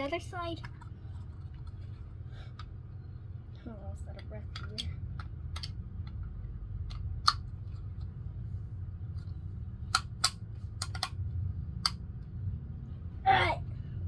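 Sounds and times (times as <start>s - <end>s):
steady low rumble: 0.0s - 14.0s
plastic parts clicking together: 4.2s - 6.2s, 9.9s - 11.2s.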